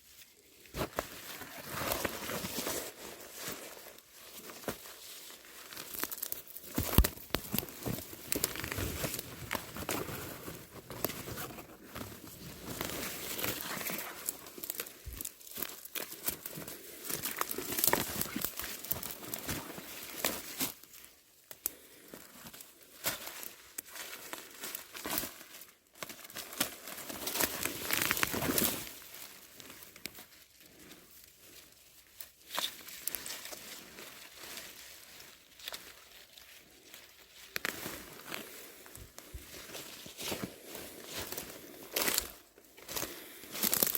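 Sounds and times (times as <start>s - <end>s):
herb leaves rustling and tearing: 0.0s - 21.0s, 22.9s - 43.9s
stems snapping: 5.8s - 9.6s.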